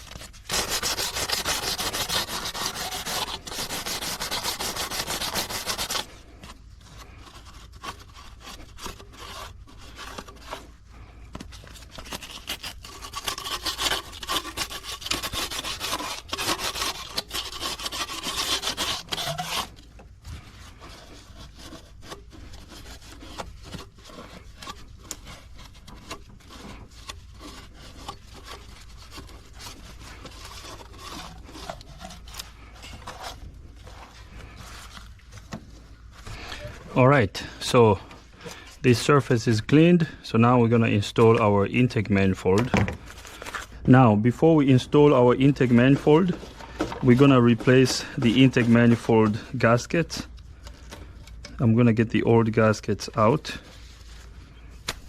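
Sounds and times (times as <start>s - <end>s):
scraping on metal: 0.0s - 38.9s, 44.8s - 51.6s.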